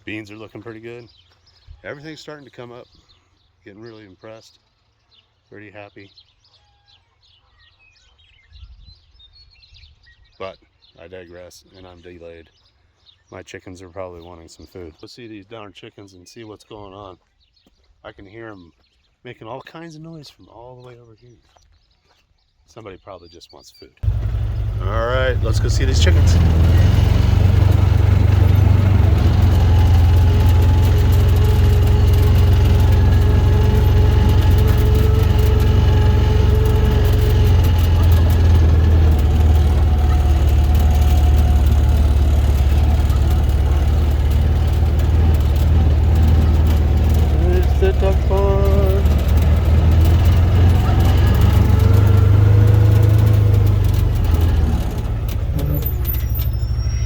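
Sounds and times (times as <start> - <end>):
engine rumble and hum: 24.0 - 57.0.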